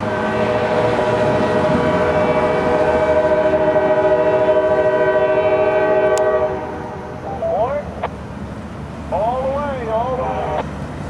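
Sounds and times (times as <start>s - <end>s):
locomotive air horn chord: 0.0s - 7.4s.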